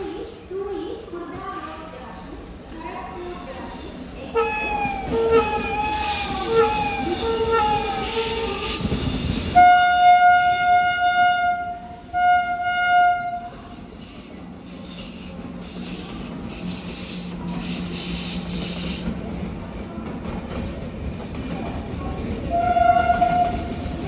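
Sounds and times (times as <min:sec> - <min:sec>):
train rumble: 0:00.1 - 0:24.0
locomotive air horn blasts: 0:09.6 - 0:13.5, 0:22.5 - 0:23.7.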